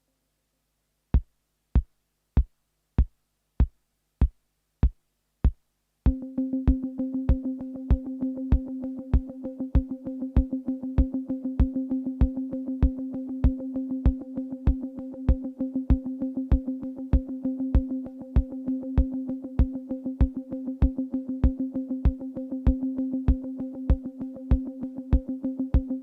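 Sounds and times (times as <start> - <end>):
drum machine kick: 1.2 - 17.2.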